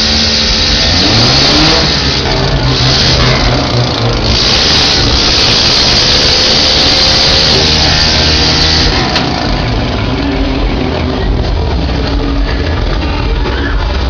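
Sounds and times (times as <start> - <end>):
loud noise: 0.0 - 14.0
vehicle engine revving: 0.0 - 14.0.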